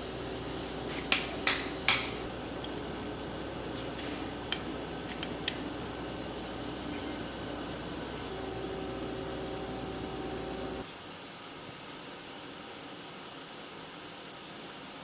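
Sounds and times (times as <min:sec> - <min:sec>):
hammer striking metal: 0:01.1 - 0:03.2, 0:04.4 - 0:05.8.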